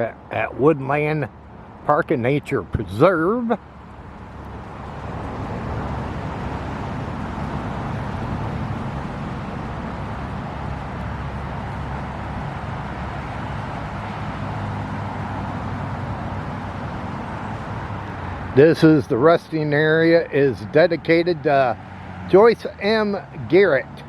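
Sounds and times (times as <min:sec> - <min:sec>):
road traffic rumble: 0:00.0 - 0:24.0.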